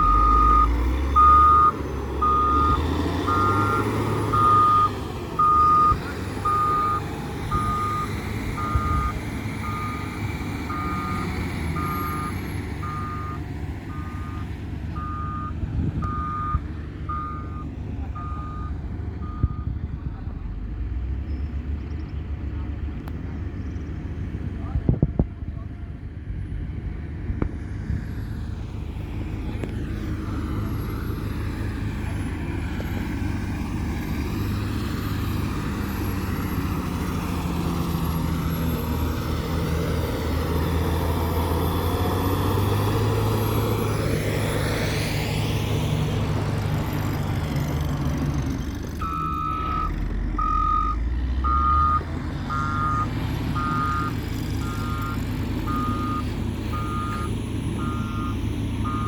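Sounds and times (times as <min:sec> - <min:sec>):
reversing alarm beeps: 0:00.1 - 0:10.1, 0:10.7 - 0:19.7, 0:49.0 - 0:59.0
heavy machine engine running: 0:26.7 - 0:59.0.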